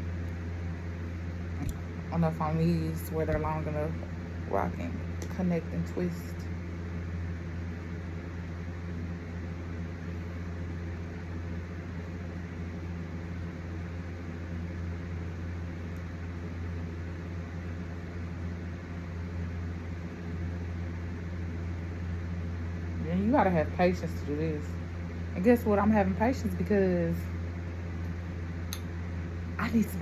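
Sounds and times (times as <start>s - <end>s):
electric motor hum: 0.0s - 30.0s.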